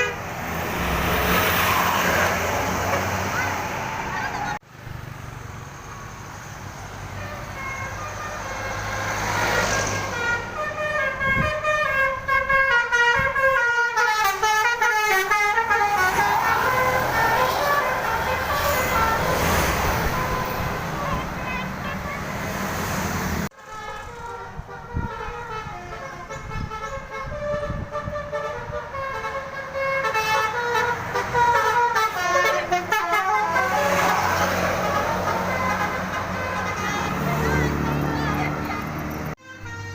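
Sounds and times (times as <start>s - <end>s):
bus musical horn playing tune: 0.0s - 0.3s, 7.2s - 22.4s, 23.5s - 39.9s.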